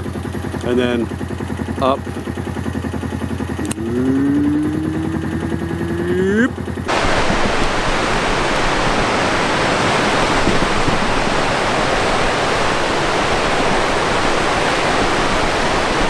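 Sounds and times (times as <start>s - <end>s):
rapids rushing: 3.8s - 16.0s.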